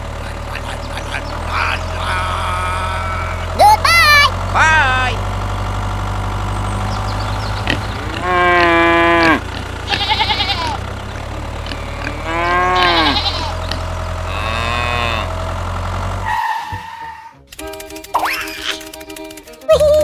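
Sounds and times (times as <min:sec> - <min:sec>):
low engine-like hum: 0:00.0 - 0:17.0
animal bleating: 0:07.6 - 0:10.9, 0:11.6 - 0:15.4
cow mooing: 0:07.6 - 0:10.9, 0:11.6 - 0:15.5.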